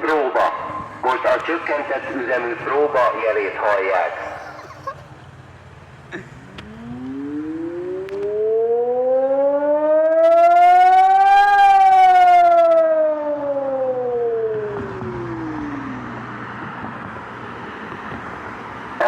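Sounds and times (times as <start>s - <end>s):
electronic warning siren tone: 6.5s - 16.0s.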